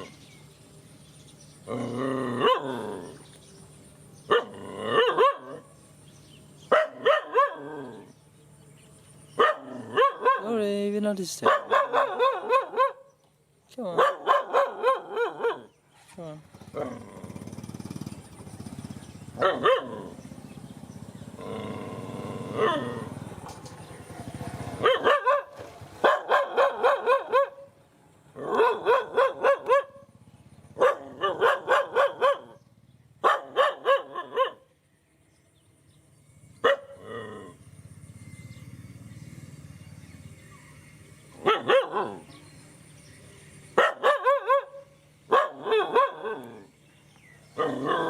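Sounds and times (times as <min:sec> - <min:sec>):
dog barking: 0:02.4 - 0:02.8, 0:04.3 - 0:05.7, 0:06.7 - 0:08.0, 0:09.4 - 0:10.6, 0:11.4 - 0:13.2, 0:13.9 - 0:15.8, 0:19.4 - 0:20.2, 0:24.7 - 0:27.8, 0:28.4 - 0:30.1, 0:30.8 - 0:32.6, 0:33.2 - 0:34.7, 0:36.6 - 0:37.0, 0:41.4 - 0:42.3, 0:43.8 - 0:46.7, 0:47.6 - 0:48.0.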